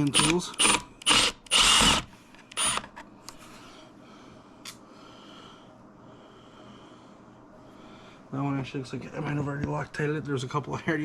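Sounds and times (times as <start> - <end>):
impact driver bursts: 0.0 - 2.8.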